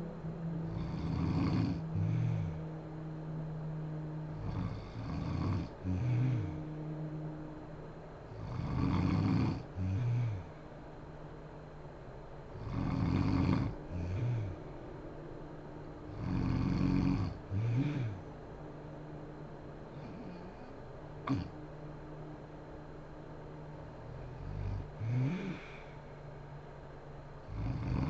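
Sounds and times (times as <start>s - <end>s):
low humming tone: 0.0s - 28.0s
woman snoring: 0.6s - 2.7s, 4.3s - 6.9s, 8.3s - 10.6s, 12.5s - 14.6s, 16.1s - 18.3s, 19.9s - 21.6s, 24.1s - 26.1s, 27.4s - 28.0s.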